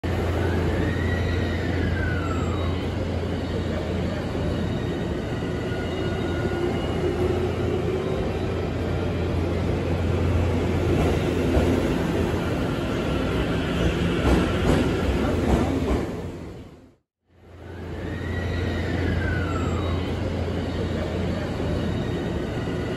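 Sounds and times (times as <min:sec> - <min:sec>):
train rumbling: 0:00.1 - 0:16.9.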